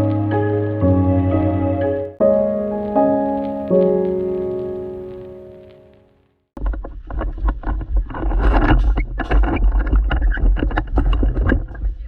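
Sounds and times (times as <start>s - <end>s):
wind rumble on microphone: 6.6s - 12.0s.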